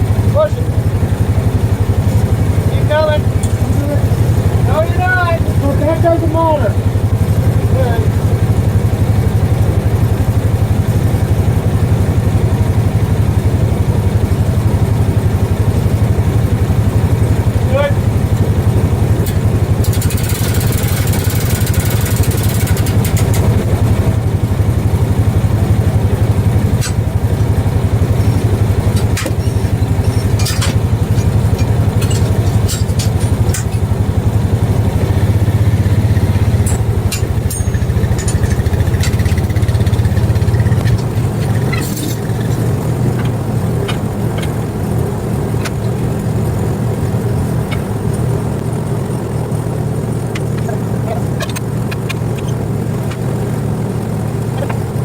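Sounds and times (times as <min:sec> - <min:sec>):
bandsaw mill engine running: 0:00.0 - 0:55.0
sharp ticks and knocks: 0:02.9 - 0:05.6, 0:18.3 - 0:24.2, 0:26.3 - 0:46.5, 0:47.3 - 0:48.7, 0:50.2 - 0:53.5, 0:54.5 - 0:55.0.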